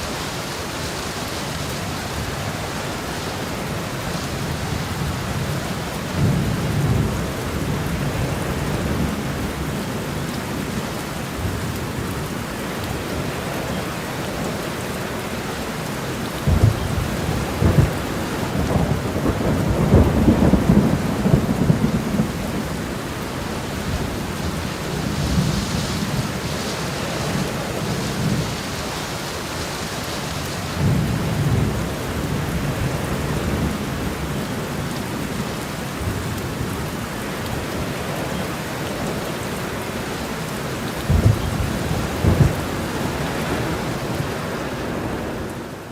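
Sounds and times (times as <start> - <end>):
heavy rain: 0.0 - 45.9
rolling thunder: 16.5 - 28.8, 30.6 - 34.4, 41.0 - 45.4.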